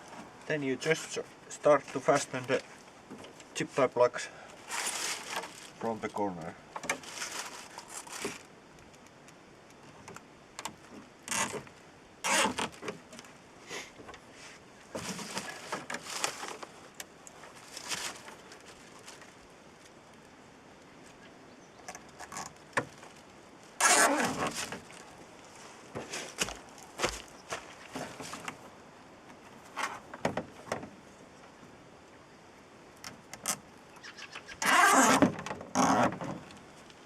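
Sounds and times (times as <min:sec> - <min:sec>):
plastic zip ties rustling and clicking: 0:23.8 - 0:24.9, 0:34.6 - 0:36.2.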